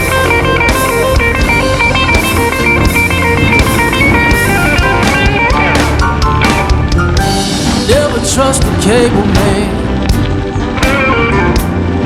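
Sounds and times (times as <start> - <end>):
drums: 0.0 - 12.0
electric guitar: 0.0 - 12.0.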